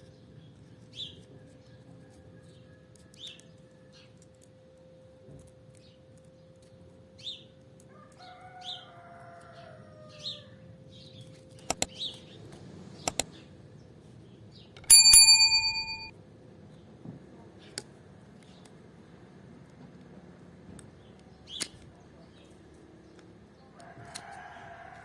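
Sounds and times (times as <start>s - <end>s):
quick clicks: 11.7s - 11.9s
short high chirps: 14.9s - 16.1s.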